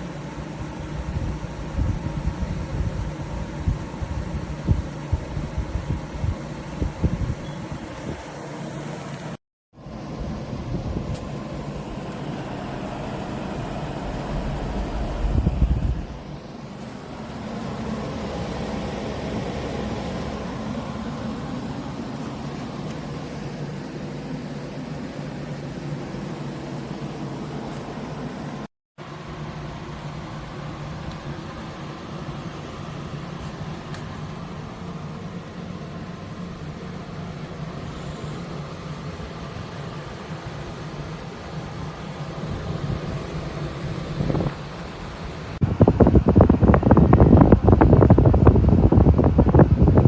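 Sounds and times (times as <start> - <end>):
air conditioner humming: 0.0 - 28.7
loud low rumble: 10.0 - 22.3.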